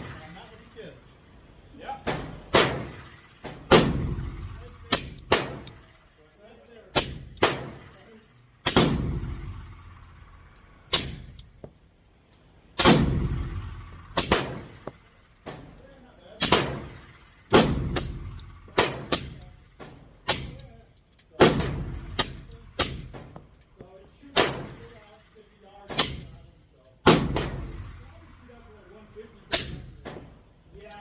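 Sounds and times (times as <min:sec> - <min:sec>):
suppressed pistol shots: 0:02.0 - 0:05.9, 0:07.0 - 0:08.0, 0:08.6 - 0:10.2, 0:10.8 - 0:11.5, 0:12.8 - 0:15.7, 0:16.4 - 0:20.6, 0:21.4 - 0:23.5, 0:24.3 - 0:24.9, 0:25.9 - 0:26.4, 0:27.0 - 0:28.0.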